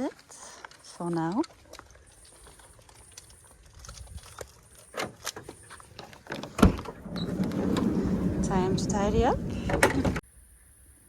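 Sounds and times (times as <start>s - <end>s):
steady low rumble: 6.7s - 10.2s.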